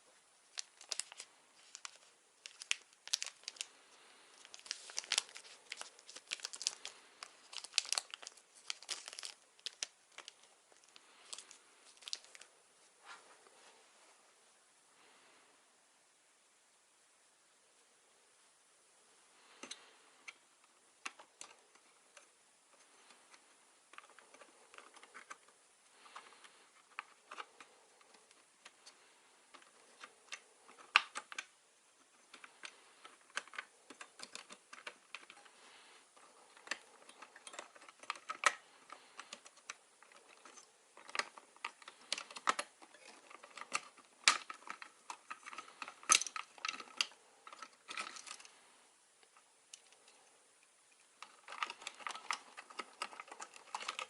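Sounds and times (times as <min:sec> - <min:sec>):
hands handling computer parts: 0:00.5 - 0:13.6, 0:19.5 - 0:48.6, 0:49.2 - 0:54.0.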